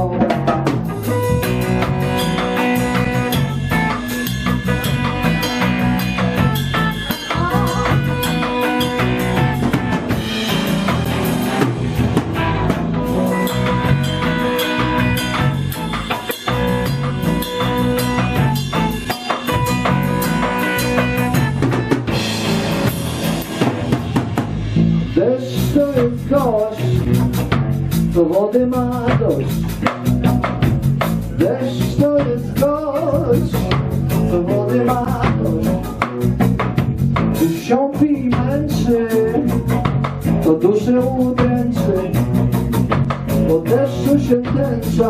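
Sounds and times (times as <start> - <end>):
bass line: 0.0 - 45.0
drum kit beat: 0.0 - 45.0
held melodic notes: 0.9 - 25.1.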